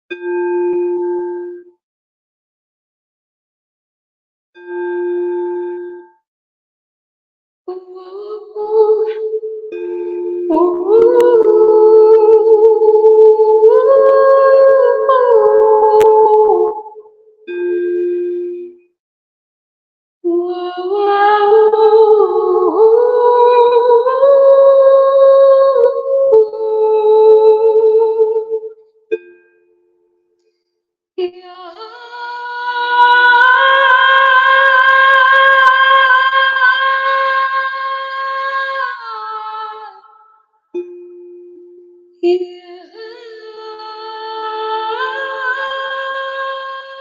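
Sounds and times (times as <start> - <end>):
woman singing sustained notes: 7.7 - 16.9
woman singing long wordless notes: 7.7 - 17.1, 20.2 - 28.8, 31.2 - 40.2, 42.2 - 47.0
soft strike with ringing tone: 40.8 - 42.2.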